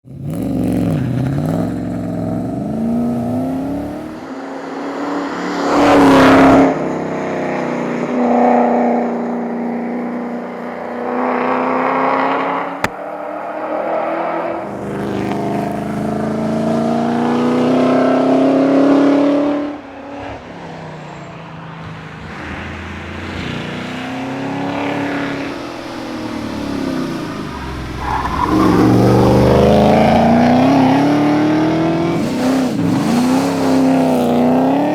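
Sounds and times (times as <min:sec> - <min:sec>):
race car engine accelerating: 0:00.2 - 0:04.3, 0:14.1 - 0:20.4, 0:22.1 - 0:34.9.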